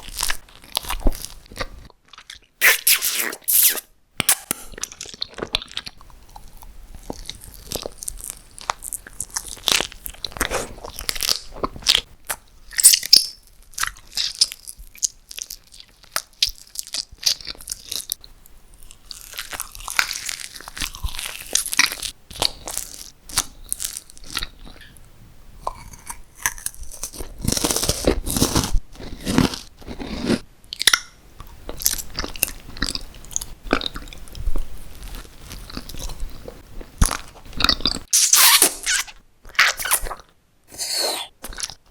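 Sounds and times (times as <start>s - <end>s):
crunchy chewing and bites: 18.9s - 25.0s, 25.6s - 31.1s.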